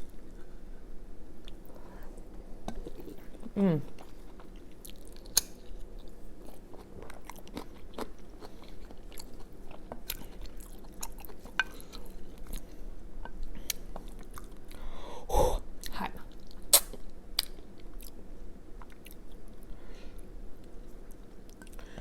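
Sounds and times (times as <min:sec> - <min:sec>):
person chewing food: 0:01.4 - 0:14.9, 0:18.8 - 0:21.9.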